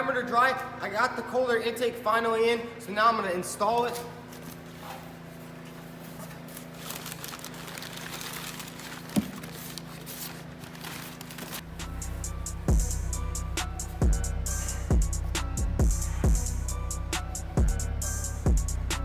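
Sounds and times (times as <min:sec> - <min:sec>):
low steady hum: 0:00.0 - 0:19.0
parts rustling and crinkling: 0:03.8 - 0:11.9
music with heavy bass-drum beat: 0:11.6 - 0:19.0.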